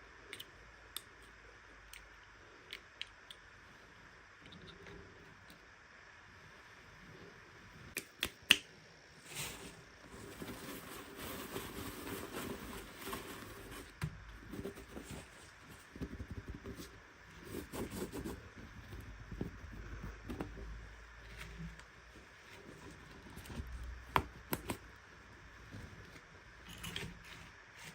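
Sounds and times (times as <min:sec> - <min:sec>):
packaging rustling and scraping: 0:09.2 - 0:18.8.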